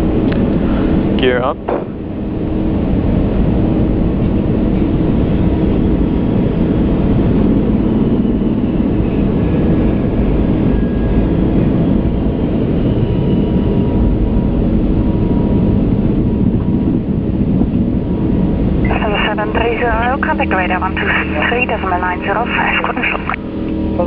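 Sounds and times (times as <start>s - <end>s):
airflow and engines rushing: 0.0s - 24.0s
faint steady tones: 18.8s - 24.0s.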